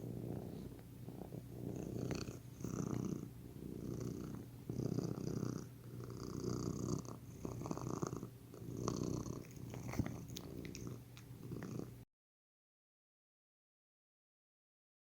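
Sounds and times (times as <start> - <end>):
cat purring: 0.0 - 12.0.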